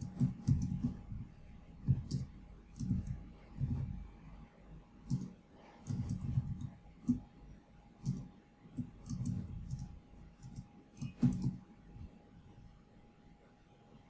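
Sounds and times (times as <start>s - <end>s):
keyboard keys clicking: 5.1s - 7.2s, 8.0s - 11.6s.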